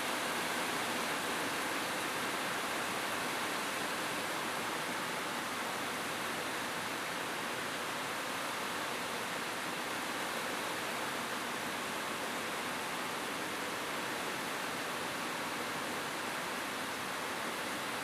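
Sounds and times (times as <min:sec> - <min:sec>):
heavy rain on a roof: 0:00.0 - 0:18.0.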